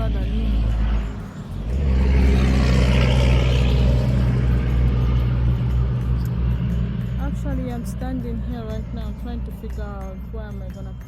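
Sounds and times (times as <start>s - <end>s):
vehicle engine rumble passing: 0.0s - 11.0s.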